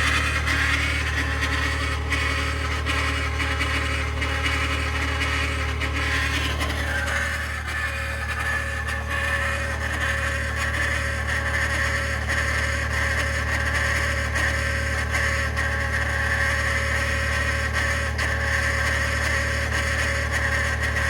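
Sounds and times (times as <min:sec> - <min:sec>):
engine low hum: 0:00.0 - 0:10.9.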